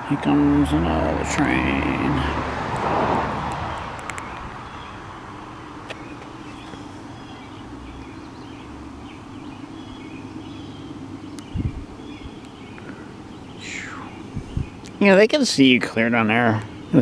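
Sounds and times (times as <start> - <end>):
train rush: 0.0 - 4.6
diesel train engine drone: 0.0 - 14.9
birds chirping faintly: 0.0 - 17.0.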